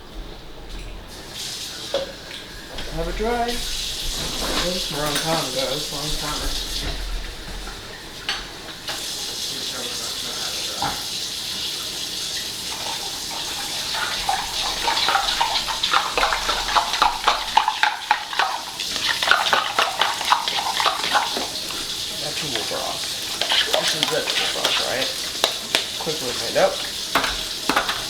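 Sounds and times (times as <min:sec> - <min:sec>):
water running: 0:00.0 - 0:28.0
spoon clinking against container: 0:14.8 - 0:28.0.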